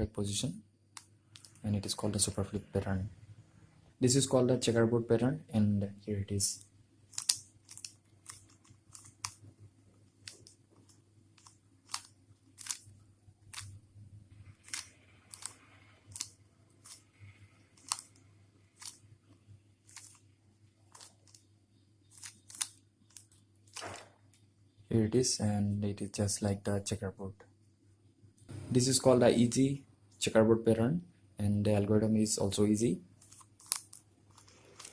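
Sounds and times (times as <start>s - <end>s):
puzzle cube plastic clicks: 1.0s - 1.6s, 7.1s - 9.4s, 10.1s - 13.8s, 14.5s - 20.3s, 20.9s - 24.0s, 33.2s - 34.9s.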